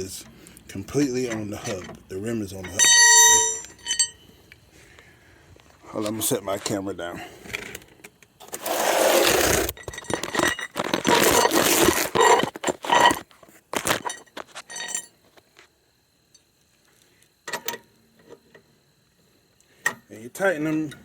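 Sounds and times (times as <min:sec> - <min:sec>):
metallic clinks: 0:02.6 - 0:04.3
scraping and knocks: 0:08.4 - 0:13.2.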